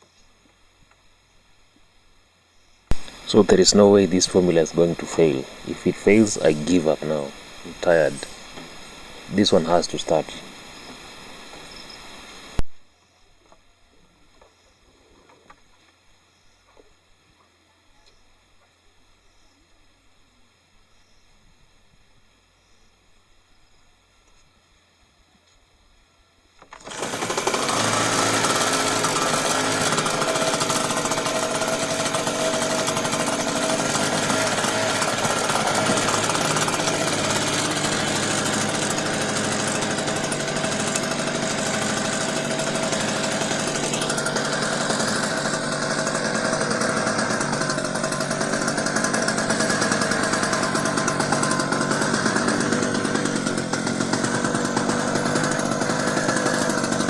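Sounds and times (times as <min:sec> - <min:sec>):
small generator engine running: 0:02.9 - 0:12.6, 0:26.6 - 0:57.0.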